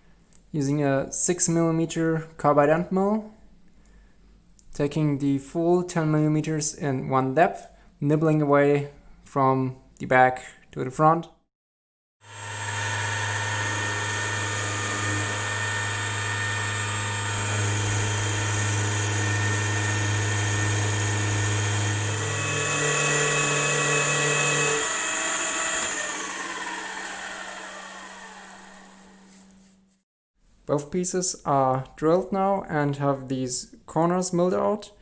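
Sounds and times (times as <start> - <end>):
milling machine whine: 12.3 - 29.3.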